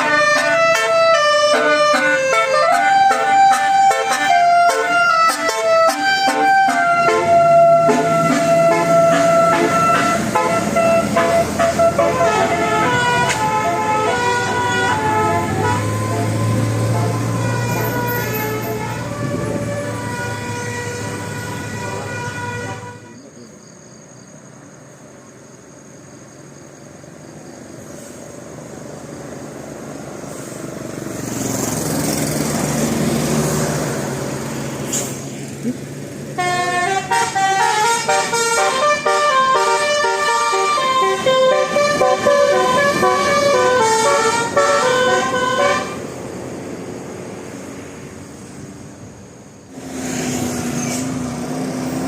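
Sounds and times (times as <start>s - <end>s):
multi-tone bus air horn tune: 0.0s - 23.3s, 36.3s - 46.2s.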